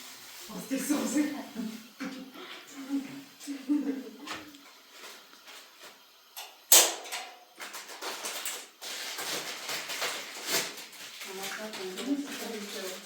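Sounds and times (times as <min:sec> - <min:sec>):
scraping and rustling of objects: 0:04.2 - 0:06.1, 0:07.6 - 0:13.0.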